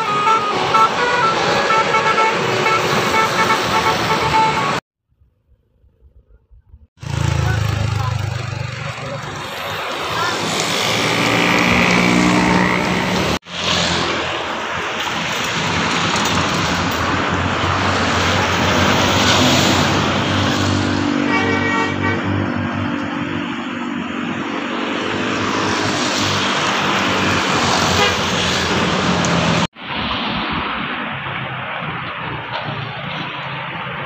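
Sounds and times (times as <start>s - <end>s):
multi-tone musical air horns: 0.0s - 4.8s, 21.2s - 22.5s, 27.8s - 28.6s
road traffic: 0.0s - 4.8s, 5.7s - 34.0s
bus engine: 7.0s - 34.0s.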